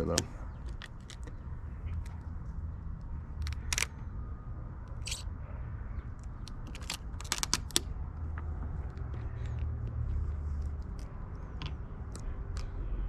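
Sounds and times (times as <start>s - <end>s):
steady low rumble: 0.0s - 13.0s
vinyl film crinkling and clicking: 6.4s - 9.2s.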